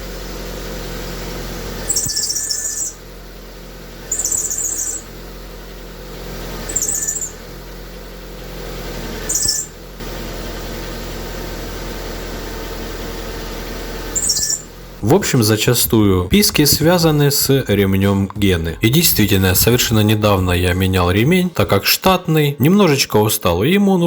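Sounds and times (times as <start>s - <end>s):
idling engine hum: 0.0s - 24.0s
car steering squealing: 1.4s - 3.2s, 3.8s - 5.3s, 6.2s - 9.9s, 14.0s - 14.9s.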